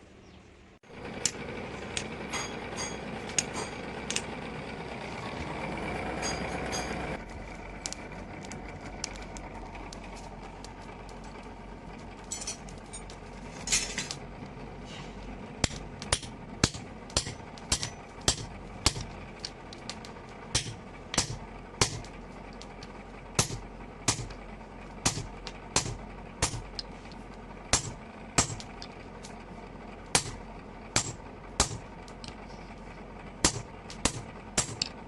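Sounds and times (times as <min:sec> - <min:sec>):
hammer striking steel: 0:02.3 - 0:03.9, 0:06.2 - 0:07.1, 0:15.6 - 0:19.1, 0:19.9 - 0:22.1, 0:23.4 - 0:24.4, 0:25.0 - 0:26.9, 0:27.7 - 0:28.8, 0:30.1 - 0:30.4, 0:31.0 - 0:31.9, 0:33.4 - 0:35.0.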